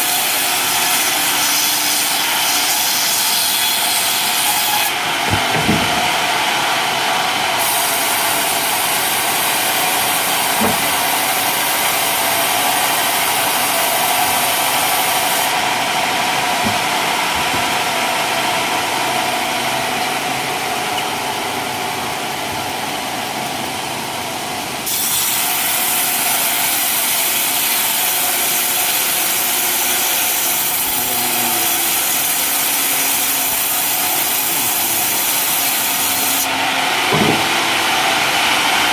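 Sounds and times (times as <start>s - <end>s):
sawmill blade rasping through wood: 0.0s - 6.3s, 7.6s - 18.4s, 24.9s - 38.5s.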